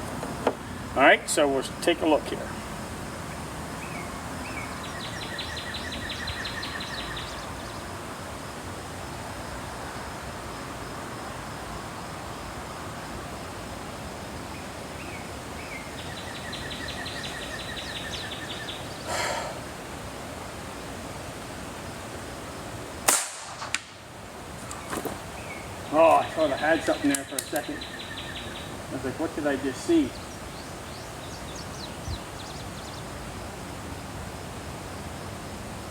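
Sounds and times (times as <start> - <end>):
wind: 0.0 - 35.9
songbird chirping and trilling: 3.3 - 8.0, 14.5 - 19.1, 24.7 - 33.3.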